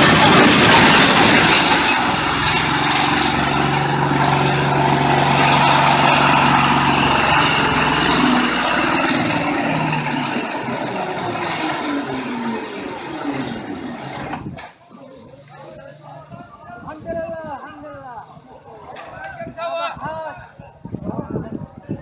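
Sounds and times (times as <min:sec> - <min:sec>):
low engine hum: 0:00.0 - 0:14.6
loud noisy clatter: 0:00.0 - 0:14.8.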